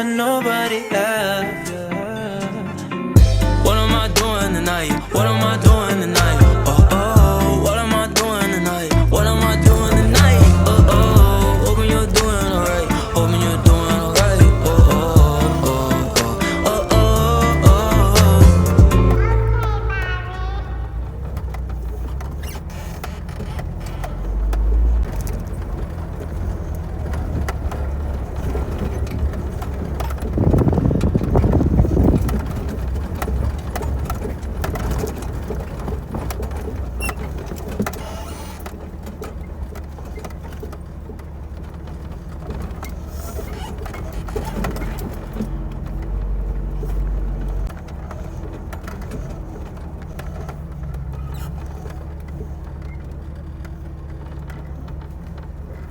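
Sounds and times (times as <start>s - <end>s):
car engine and road rumble: 0.0s - 55.9s.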